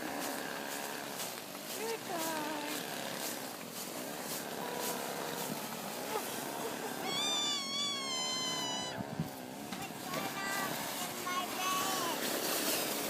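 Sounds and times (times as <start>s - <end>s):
child vocal noises: 6.1s - 12.2s
small child squealing: 7.0s - 9.1s.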